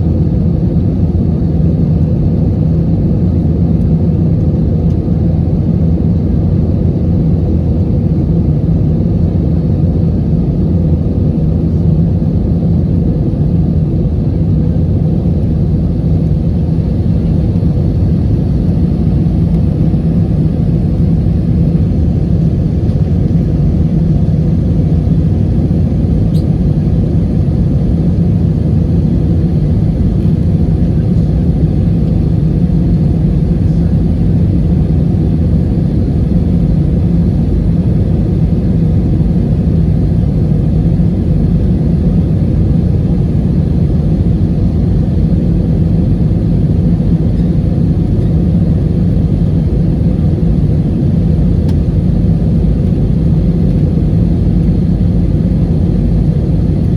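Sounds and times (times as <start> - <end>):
jet engine rumble in cabin: 0.0 - 56.9.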